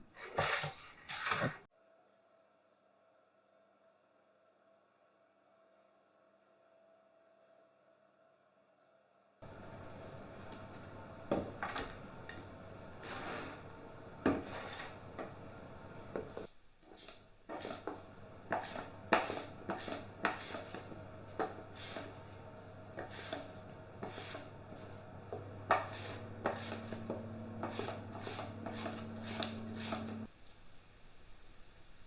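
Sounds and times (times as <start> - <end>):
knife slicing potatoes: 16.9 - 22.3, 22.9 - 30.3.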